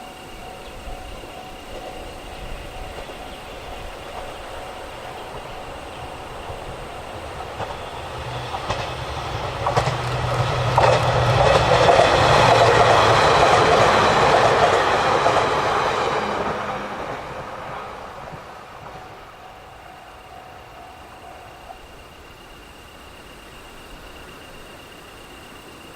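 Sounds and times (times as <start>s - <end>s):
train wheels clicking over rail joints: 0.0s - 23.2s
train running noise rushing: 0.0s - 25.9s.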